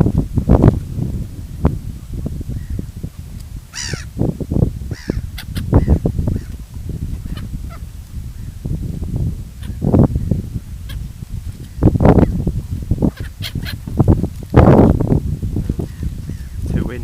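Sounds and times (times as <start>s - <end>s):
steady low rumble: 0.0s - 17.0s
gulls calling: 3.7s - 4.2s, 4.8s - 6.6s, 13.0s - 13.8s.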